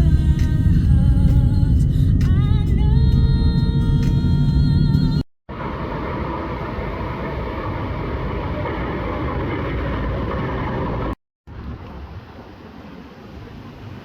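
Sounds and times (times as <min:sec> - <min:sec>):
moving vehicle rumble: 0:00.0 - 0:14.0.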